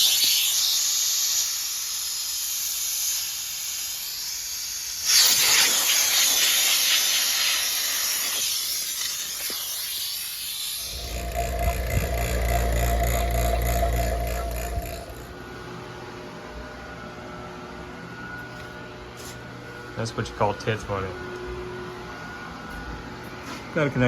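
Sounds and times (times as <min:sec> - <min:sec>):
pressurized gas hissing: 0:00.0 - 0:15.3.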